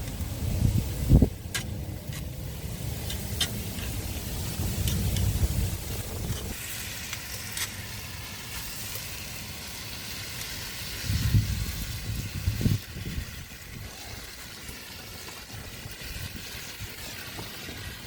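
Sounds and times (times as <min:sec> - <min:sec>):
wind rumble on microphone: 0:00.0 - 0:06.6, 0:11.0 - 0:18.0
food sizzling in a pan: 0:02.3 - 0:18.0.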